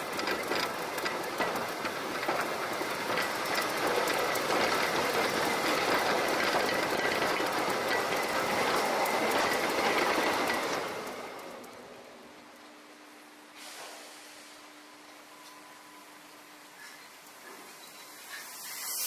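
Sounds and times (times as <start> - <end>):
roller coaster rattling on track: 0.0 - 12.1.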